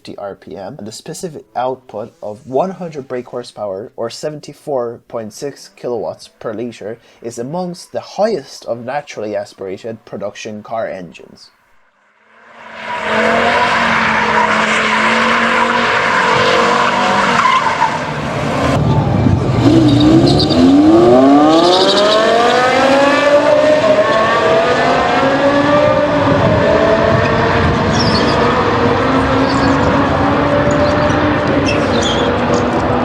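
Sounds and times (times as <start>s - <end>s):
car engine revving: 12.1s - 33.0s.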